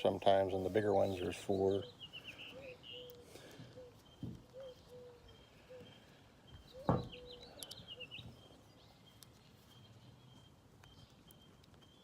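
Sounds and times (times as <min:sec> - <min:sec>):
birds calling faintly: 0:00.0 - 0:12.0
dull thump: 0:06.8 - 0:07.2.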